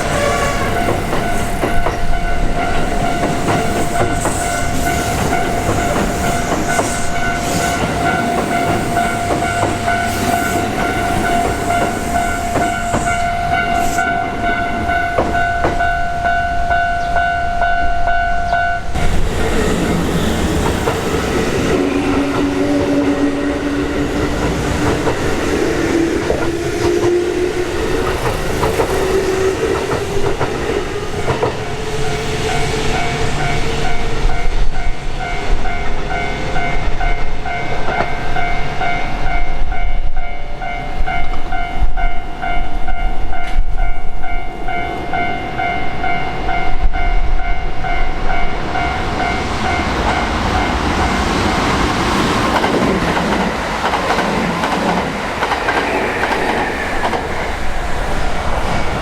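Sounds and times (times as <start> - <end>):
train wheel clatter: 0.0 - 14.1, 19.0 - 34.2, 48.8 - 59.0
level crossing warning bell: 0.0 - 28.6, 31.3 - 51.4.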